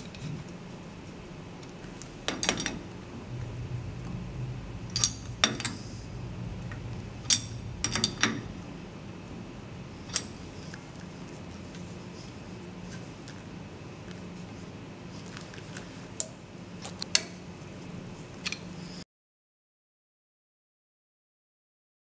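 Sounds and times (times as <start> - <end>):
faint low machine hum: 0.0 - 19.0
metal parts clanking: 2.2 - 2.9, 4.9 - 5.8, 7.2 - 8.4.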